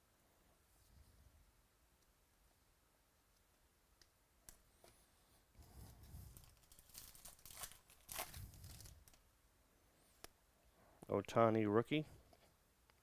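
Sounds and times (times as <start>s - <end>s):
rustling and crinkling packaging: 5.6s - 9.2s.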